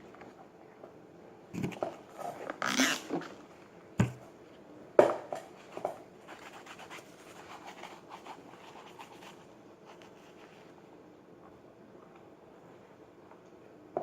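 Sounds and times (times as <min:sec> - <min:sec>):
brush scrubbing a sneaker: 0:06.2 - 0:10.6.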